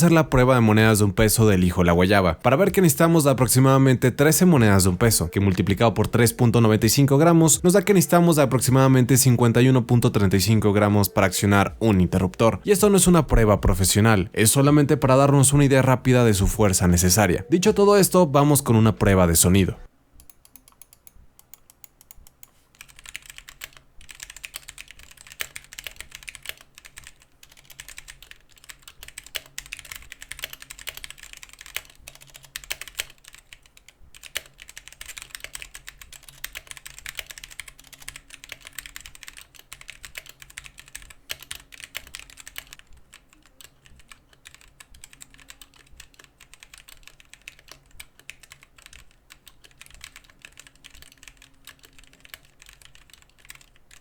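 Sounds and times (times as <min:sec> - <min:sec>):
mechanical keyboard typing: 0:20.2 - 0:54.0.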